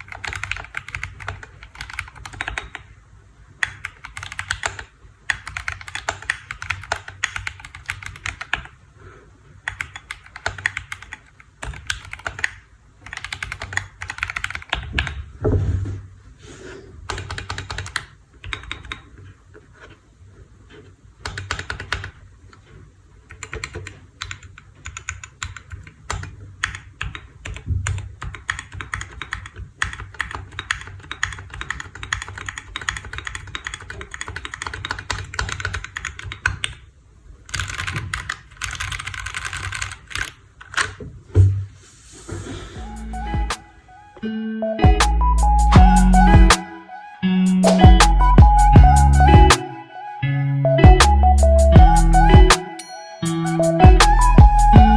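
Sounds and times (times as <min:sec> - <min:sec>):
mechanical keyboard key clacks: 0:23.3 - 0:36.8, 0:37.5 - 0:41.0.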